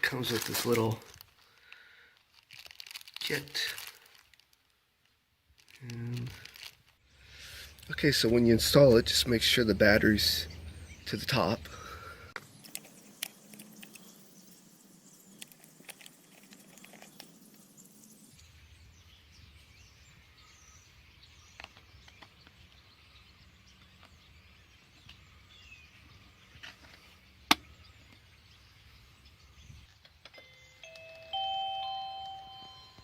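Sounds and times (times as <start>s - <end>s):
faint outdoor background: 0.0s - 33.0s
small handling clicks: 12.4s - 14.0s
wireless doorbell chime: 30.4s - 33.0s.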